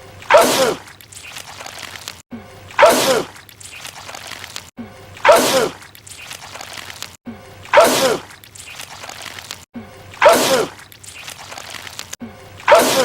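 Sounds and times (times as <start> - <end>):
man sneezing with falling cry: 12.7 - 13.0.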